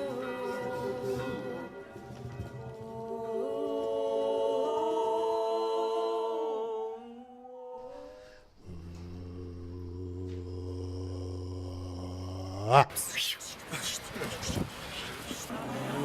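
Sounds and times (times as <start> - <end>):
low held note: 7.4 - 12.4
voices humming held notes: 7.8 - 12.9.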